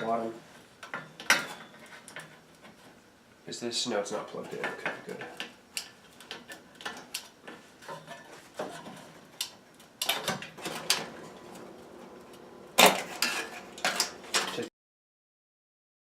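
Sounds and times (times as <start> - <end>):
light clicks and scrapes of parts: 0.8 - 3.0, 4.1 - 11.0, 12.8 - 14.7
loud clatter of parts: 12.8 - 14.7.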